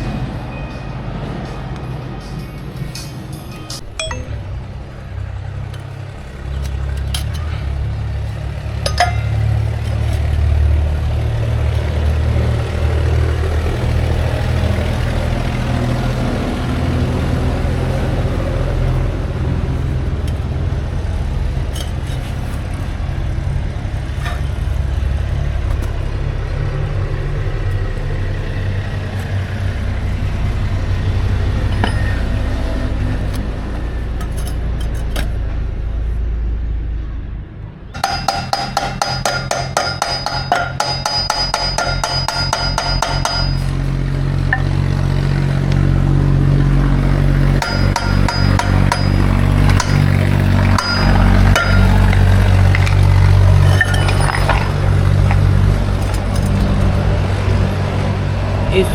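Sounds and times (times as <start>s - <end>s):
workshop rumble: 0.0s - 58.9s
metallic clinks of tools: 2.8s - 4.6s, 8.9s - 9.5s.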